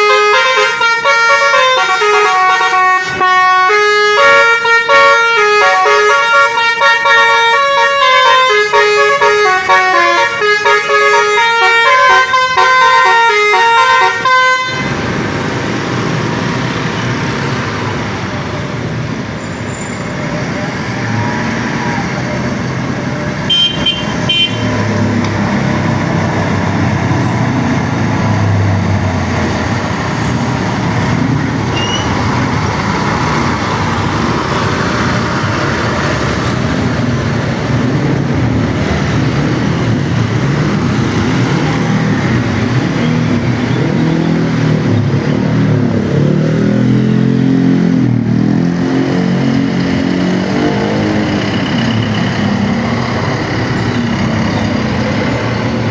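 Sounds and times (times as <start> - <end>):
heavy vehicle engine running: 11.4 - 55.9
short horn beeps: 31.8 - 32.2.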